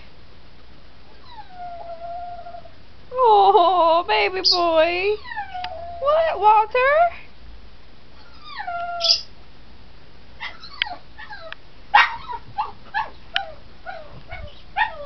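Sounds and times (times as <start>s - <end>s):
dog whining: 1.2s - 2.7s, 5.2s - 6.1s, 8.2s - 9.3s, 10.4s - 15.0s
dog yelping: 5.2s - 6.0s, 8.2s - 9.3s, 10.4s - 15.0s.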